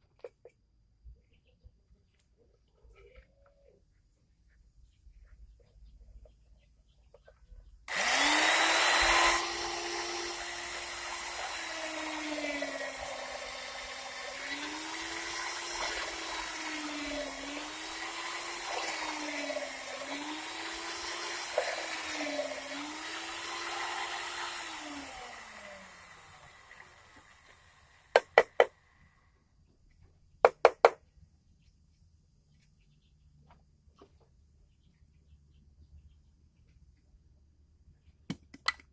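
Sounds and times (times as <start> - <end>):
rotary hammer drill whining: 7.9 - 28.8.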